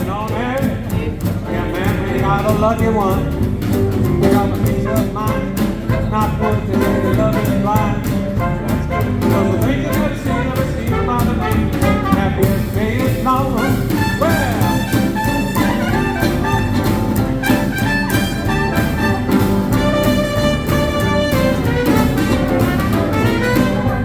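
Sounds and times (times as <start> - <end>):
swing band playing: 0.0 - 24.0
brass sliding between notes: 13.6 - 24.0.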